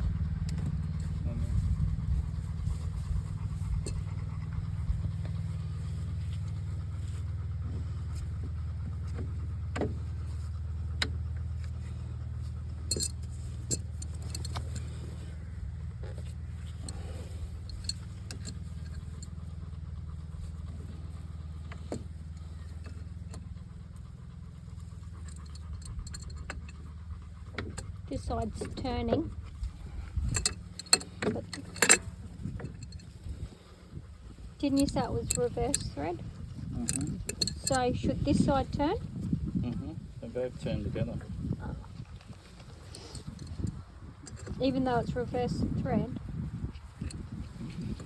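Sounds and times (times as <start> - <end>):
engine idling: 0.0 - 48.0
light metallic clicks and taps: 2.7 - 4.2, 12.9 - 15.0, 16.6 - 19.3, 24.8 - 26.9, 30.2 - 33.1, 34.6 - 36.1, 36.8 - 38.9.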